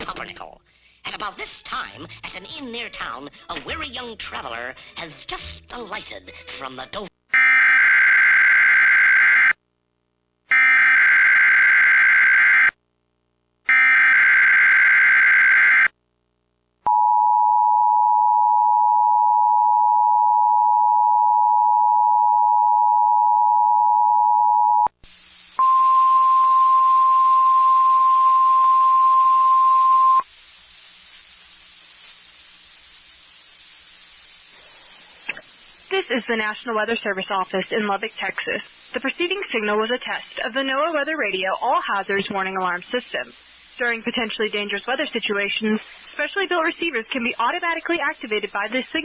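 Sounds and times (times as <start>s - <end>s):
single-tone warning alarm: 7.4s - 9.6s, 10.5s - 12.8s, 13.7s - 15.9s, 25.6s - 30.2s
radio hiss: 25.0s - 25.7s, 30.2s - 49.0s
two-tone attention signal: 25.6s - 30.2s
warbling digital data bursts: 30.2s - 35.9s.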